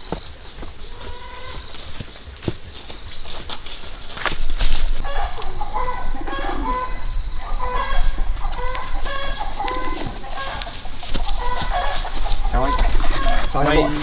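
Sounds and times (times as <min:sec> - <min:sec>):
chickens clucking: 0:05.0 - 0:14.0.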